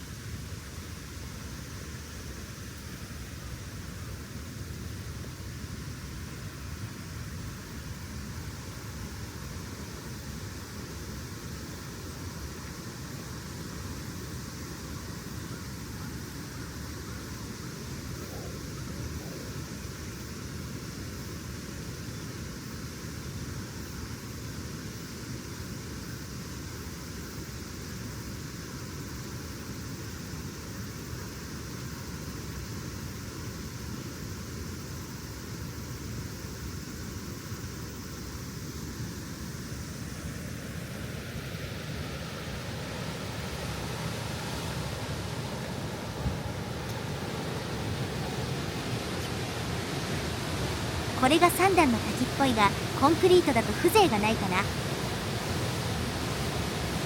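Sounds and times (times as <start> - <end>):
fast-flowing river water rushing: 43.2 - 57.0.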